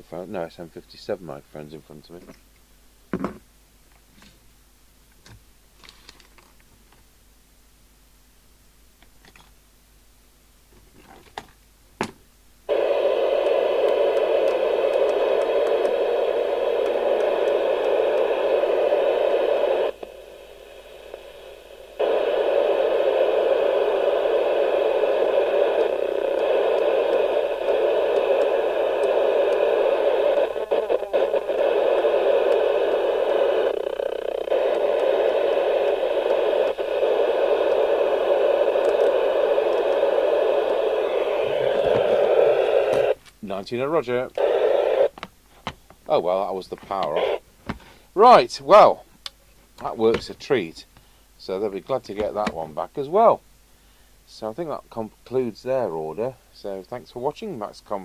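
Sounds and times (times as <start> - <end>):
radio clicks: 12.7 - 43.4, 44.2 - 46.0, 46.7 - 47.9, 52.1 - 52.8
radio loudspeaker hissing: 12.7 - 45.1, 46.1 - 49.0, 49.9 - 58.0.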